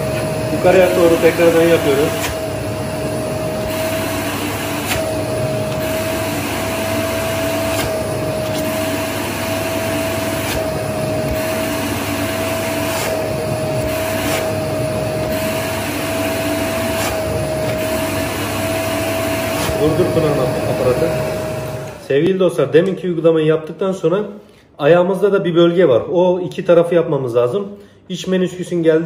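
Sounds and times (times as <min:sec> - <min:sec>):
vacuum cleaner running: 0:00.0 - 0:22.3.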